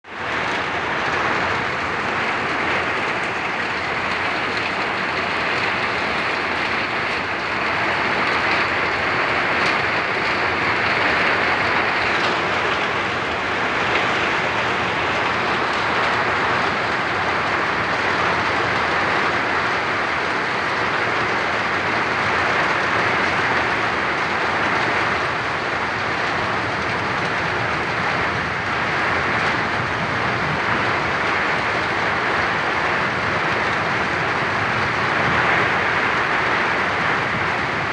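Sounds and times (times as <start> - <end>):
heavy rain falling: 0.0 - 37.9.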